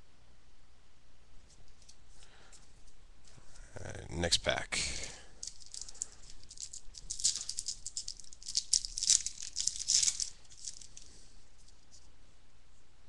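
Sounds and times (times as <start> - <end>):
wrapper crinkling and tearing: 5.2 - 11.8.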